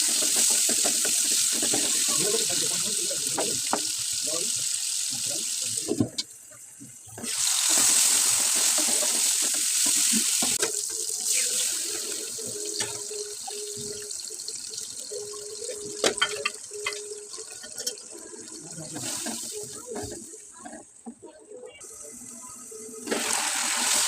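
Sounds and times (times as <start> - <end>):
tap water running into sink: 0.0 - 6.3, 7.2 - 20.2.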